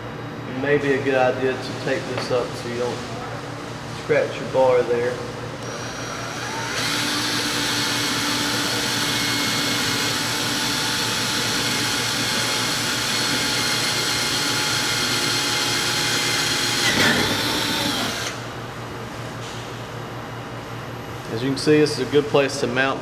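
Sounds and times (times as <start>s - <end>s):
electric drill boring through plastic: 5.6s - 18.4s.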